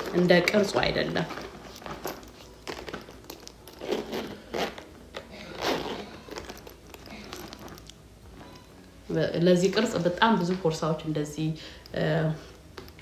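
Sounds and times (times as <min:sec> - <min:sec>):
zipper rasping: 0:00.0 - 0:08.6
bag rustling and clicking: 0:00.0 - 0:08.7.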